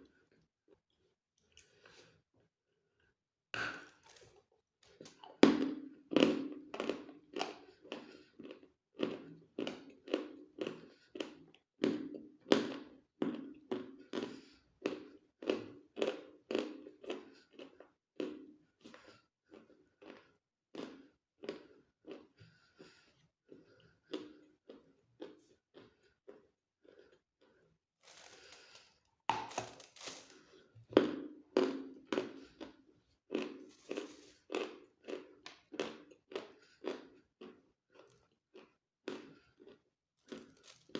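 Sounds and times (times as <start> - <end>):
chalk crunching being chewed: 18.8 - 31.1, 31.9 - 40.9
packaging rustling: 28.0 - 30.4.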